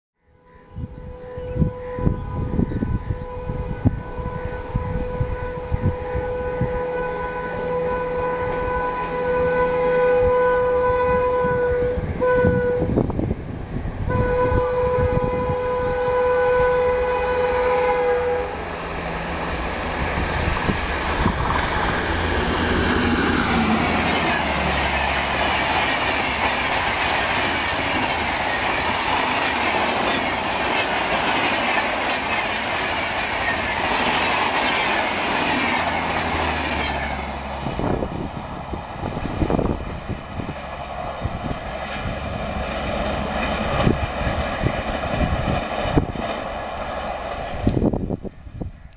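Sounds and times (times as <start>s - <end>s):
locomotive horn blowing: 0.2s - 13.1s, 14.0s - 18.9s
train coaches clattering over rails: 18.6s - 38.3s.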